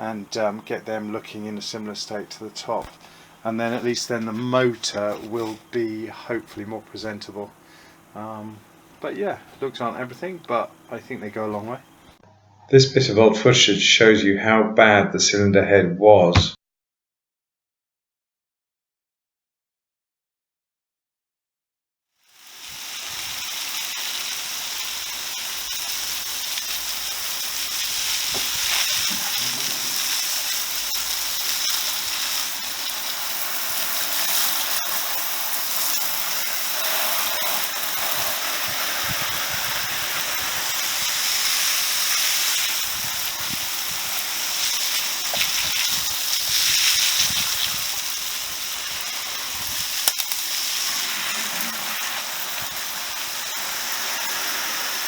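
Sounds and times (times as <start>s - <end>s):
shot blaster hissing: 22.4s - 55.0s.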